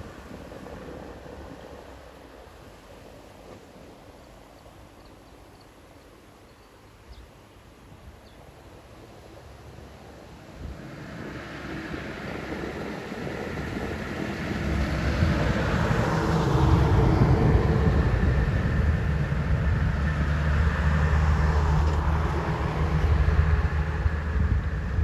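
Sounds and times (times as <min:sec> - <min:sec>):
vehicle engine rumble: 0:08.8 - 0:25.0
falling whine of passing vehicle: 0:10.2 - 0:25.0.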